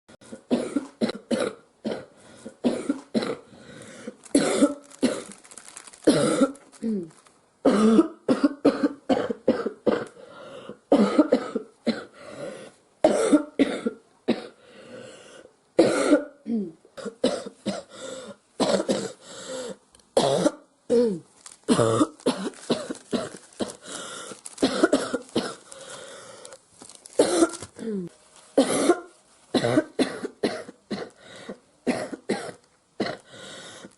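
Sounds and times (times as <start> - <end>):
girl coughing: 0.5 - 3.5, 4.3 - 5.4, 6.0 - 10.2, 10.9 - 12.1, 13.0 - 14.6, 15.8 - 17.9, 18.6 - 19.2, 20.2 - 25.7, 27.2 - 31.2, 31.9 - 33.2.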